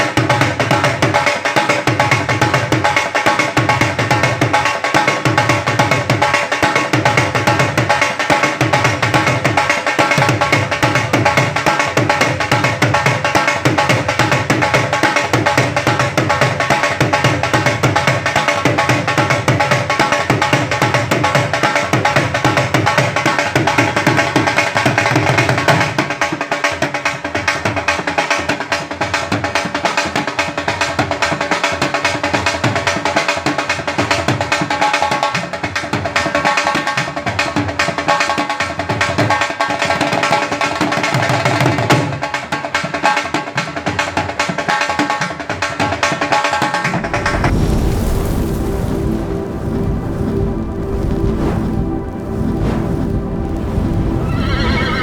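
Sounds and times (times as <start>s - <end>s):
sustained melody: 48.2s - 55.0s.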